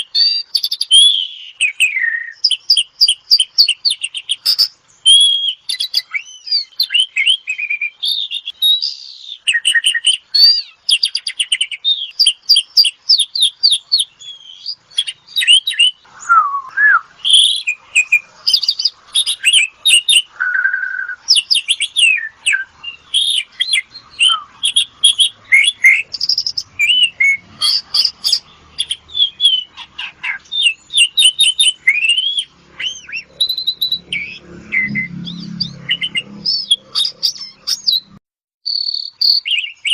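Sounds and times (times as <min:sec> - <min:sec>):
starling singing: 0:00.0 - 0:39.9.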